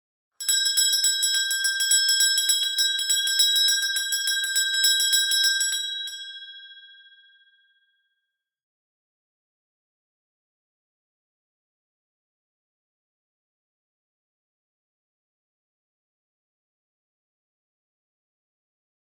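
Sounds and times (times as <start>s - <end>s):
small handbell ringing: 0.4s - 7.7s.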